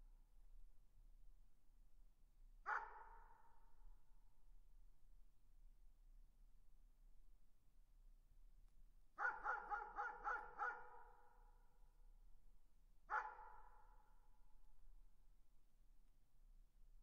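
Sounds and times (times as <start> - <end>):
distant dog barking: 2.7 - 3.2, 9.2 - 11.2, 13.1 - 13.7.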